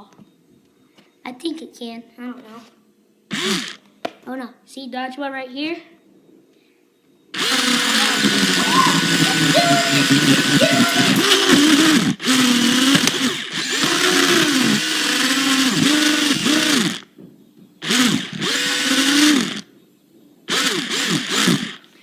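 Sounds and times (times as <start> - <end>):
toy car electric motor whirring: 3.3 - 3.8, 7.4 - 17.1, 17.8 - 19.7, 20.5 - 22.0.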